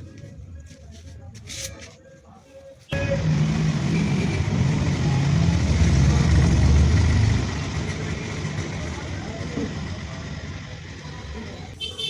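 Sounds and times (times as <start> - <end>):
vehicle engine rumbling: 2.9 - 12.0.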